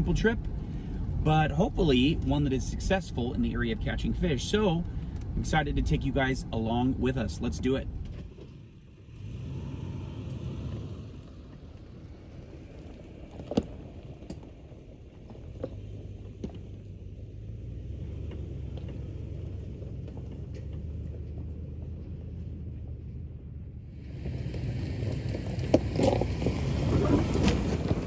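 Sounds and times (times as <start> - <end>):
car engine and tyre rumble: 0.0 - 28.0.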